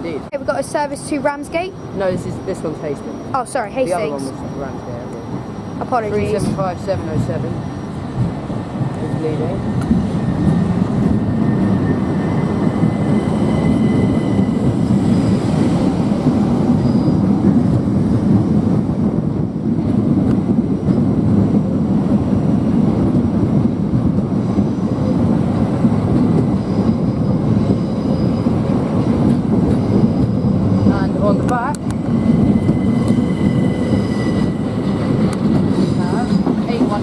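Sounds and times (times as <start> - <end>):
train wheels rumbling: 0.0 - 37.0
faint high whining tones: 0.4 - 8.3.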